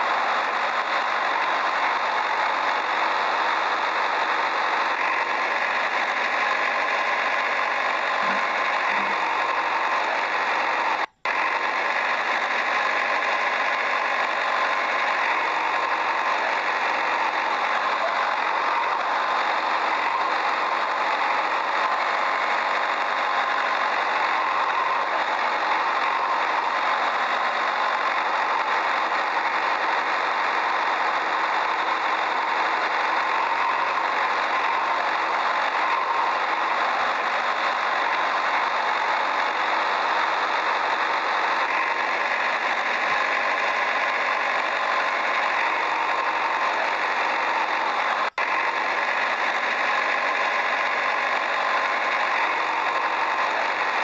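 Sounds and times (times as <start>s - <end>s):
steady engine running: 0.0s - 54.0s.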